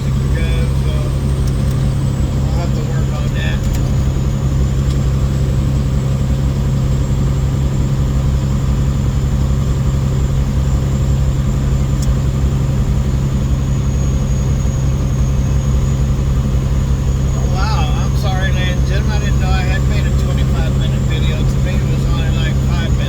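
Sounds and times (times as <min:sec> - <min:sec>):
diesel engine droning: 0:00.0 - 0:23.0.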